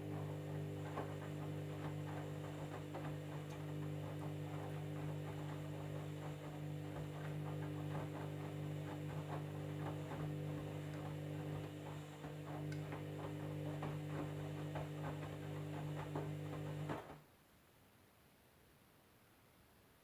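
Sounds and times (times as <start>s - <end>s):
washing machine humming: 0.0s - 17.2s.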